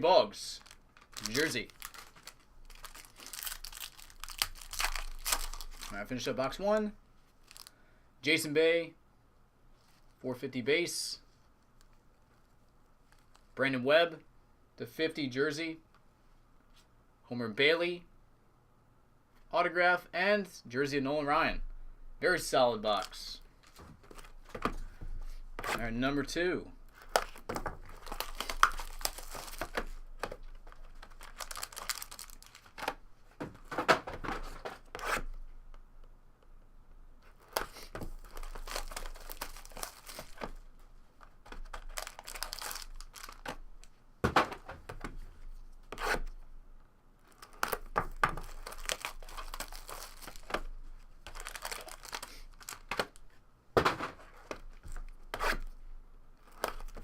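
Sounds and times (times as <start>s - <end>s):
wrapping tearing and crinkling: 0.5s - 6.4s, 7.3s - 7.7s, 26.9s - 33.0s, 37.2s - 43.9s, 47.2s - 53.4s, 56.4s - 57.0s.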